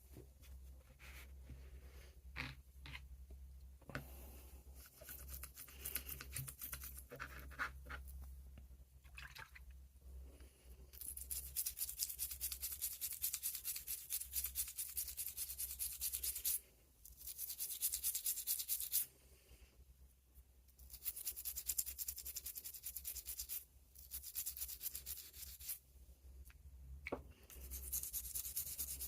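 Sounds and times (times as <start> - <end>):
brush scrubbing a knife: 4.8 - 8.2, 11.0 - 19.1, 20.8 - 25.8, 27.5 - 29.0.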